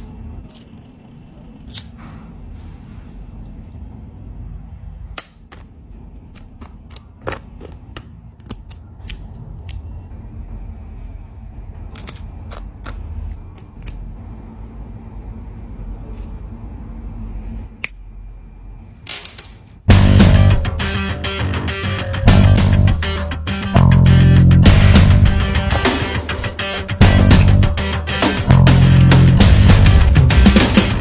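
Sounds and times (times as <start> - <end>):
sheet-metal pieces clicking: 19.0 - 19.8.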